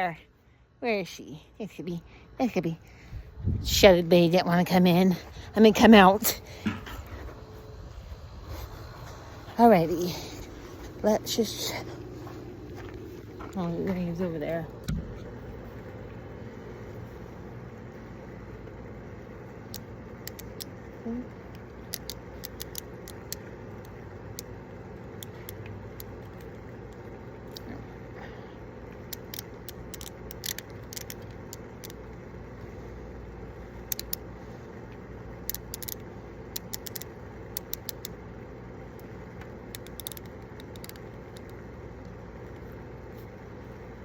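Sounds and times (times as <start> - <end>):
low background rumble: 0.0 - 44.0
small objects clicking and rattling: 21.8 - 23.9, 29.0 - 32.0, 35.4 - 38.2, 39.7 - 41.6.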